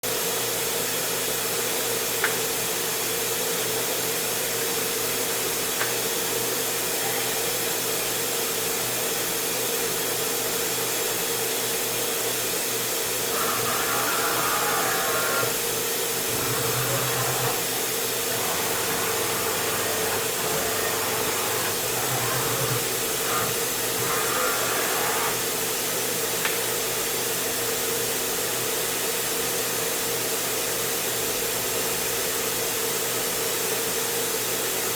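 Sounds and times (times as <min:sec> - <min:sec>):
machinery hum: 0:13.2 - 0:25.6.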